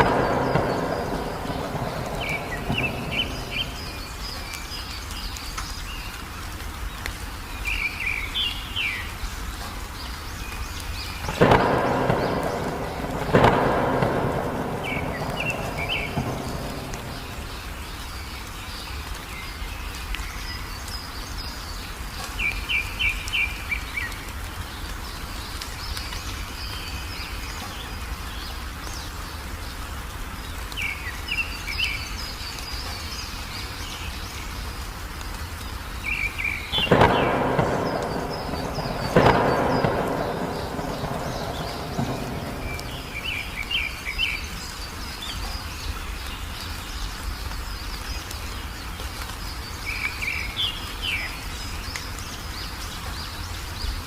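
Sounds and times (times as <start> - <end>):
thunder claps: 0.0 - 5.4, 10.8 - 18.8, 36.0 - 45.6
birds chirping: 0.0 - 54.0
rain hiss: 0.0 - 54.0.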